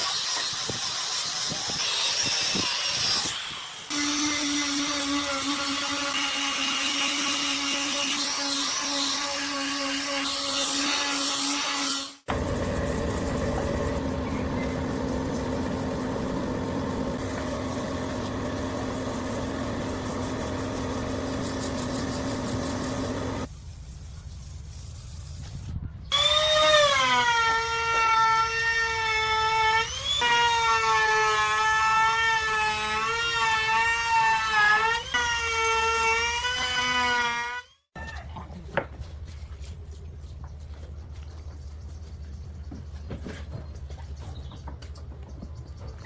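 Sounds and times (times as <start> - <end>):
machine humming: 12.3 - 23.5
power tool whine wavering: 12.3 - 23.5.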